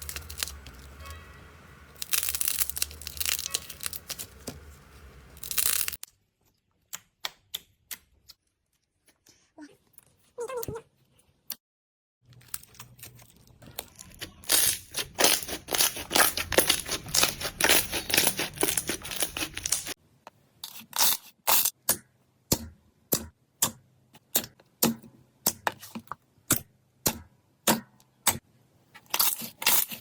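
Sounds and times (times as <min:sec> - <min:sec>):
slime crackling and popping: 0:00.0 - 0:00.8, 0:02.0 - 0:04.5, 0:05.4 - 0:06.0, 0:13.9 - 0:20.0.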